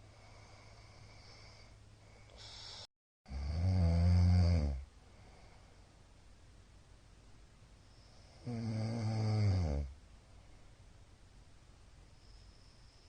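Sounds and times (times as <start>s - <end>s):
man snoring: 2.4s - 4.9s, 8.3s - 9.9s.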